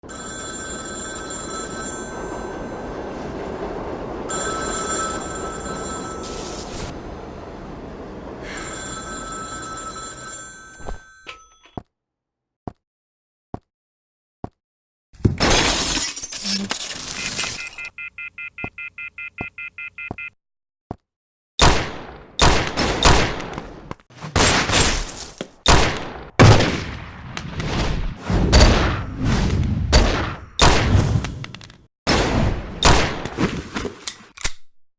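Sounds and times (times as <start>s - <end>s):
telephone ringing: 0.0s - 2.7s, 4.3s - 6.7s, 8.5s - 11.7s, 17.6s - 20.4s
low train rumble: 0.1s - 10.7s
heavy gunshots booming: 25.7s - 31.2s.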